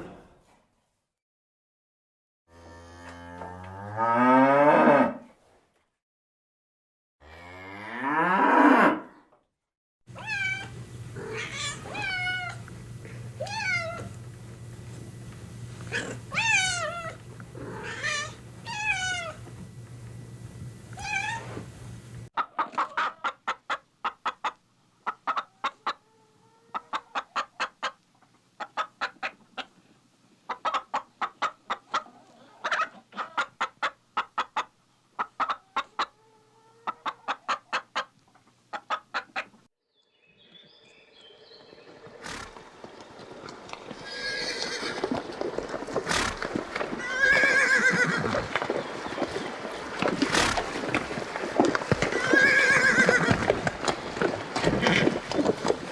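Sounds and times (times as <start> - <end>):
hen clucking: 10.1 - 20.2, 22.4 - 29.8, 30.5 - 39.6
cat meowing: 10.2 - 12.6, 13.4 - 14.1, 15.9 - 19.4, 21.0 - 21.5.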